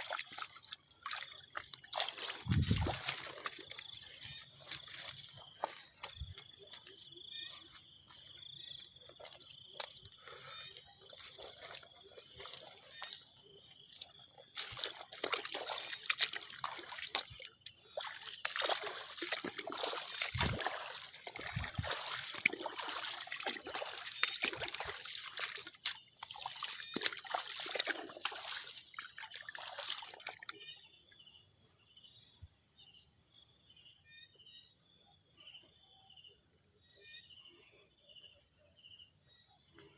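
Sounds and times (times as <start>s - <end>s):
water sloshing and splashing: 0.0s - 31.4s
insect chirring: 0.0s - 31.6s.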